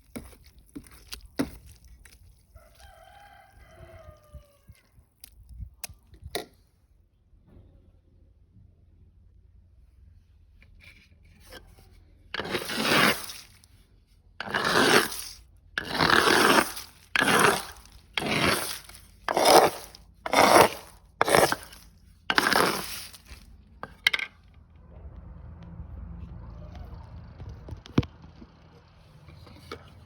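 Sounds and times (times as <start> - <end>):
rasping scraping strokes: 0.0 - 5.4, 10.8 - 13.8, 14.4 - 24.3, 29.0 - 30.0.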